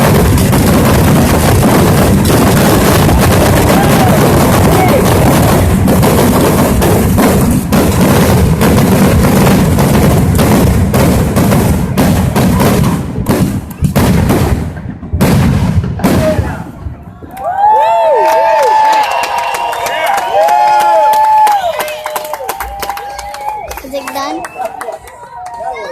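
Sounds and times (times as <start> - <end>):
fireworks exploding: 0.0 - 17.4.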